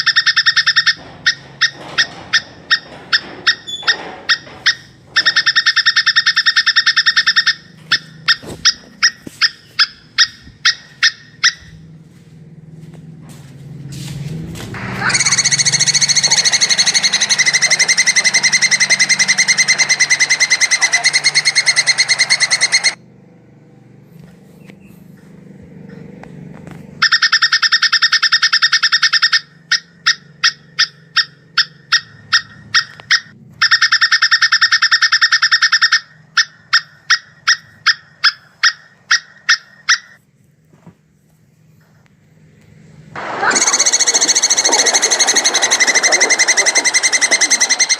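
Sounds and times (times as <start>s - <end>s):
squirrel chattering trill: 15.0s - 23.0s, 43.4s - 47.9s.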